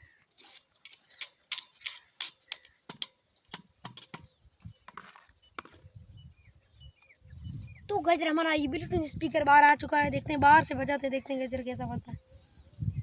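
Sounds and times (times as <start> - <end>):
sharp clicks and knocks: 0.8 - 4.3.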